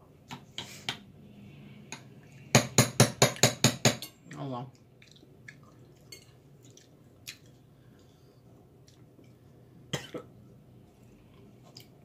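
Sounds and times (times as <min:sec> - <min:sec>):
soft chewing: 0:04.3 - 0:12.0.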